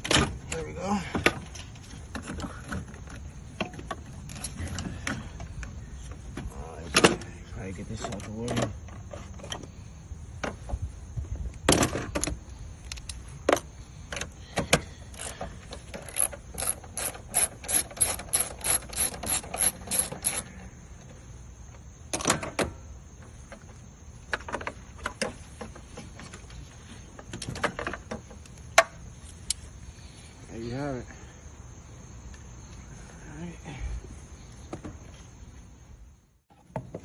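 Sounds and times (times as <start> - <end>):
ratchet wrench clicking: 15.1 - 20.5.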